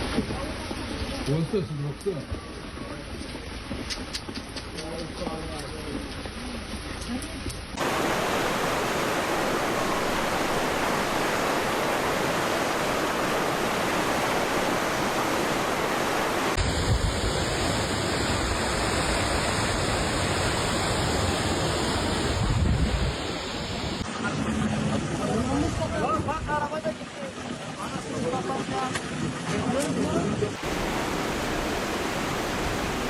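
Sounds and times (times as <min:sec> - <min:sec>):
rushing floodwater: 0:07.7 - 0:33.0.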